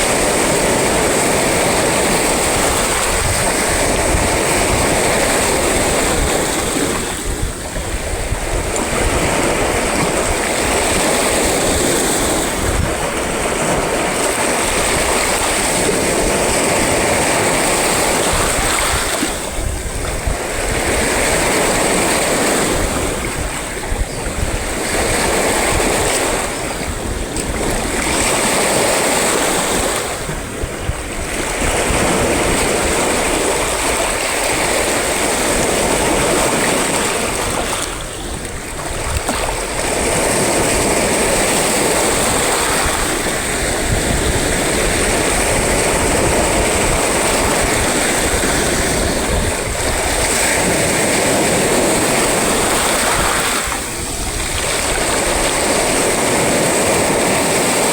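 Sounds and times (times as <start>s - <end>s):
sea waves breaking on shore: 0.0s - 57.9s.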